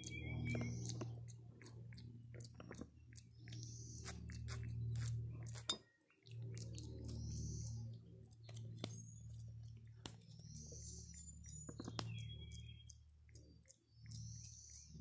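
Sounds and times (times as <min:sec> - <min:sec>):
monkey mouth clicks and chewing: 0:00.0 - 0:15.0
steady low hum: 0:00.0 - 0:15.0.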